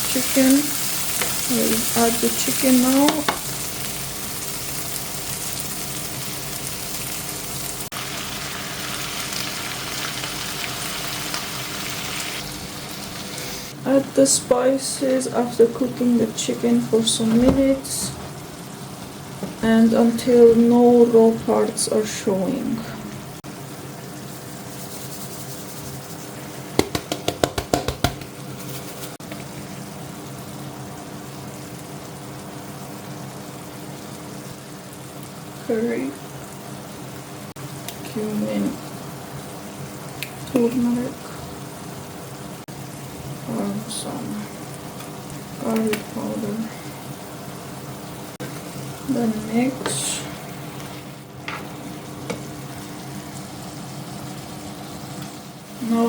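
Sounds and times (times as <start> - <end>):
chicken sizzling in a pan: 0.0 - 56.0
sharp knocks: 26.8 - 28.3.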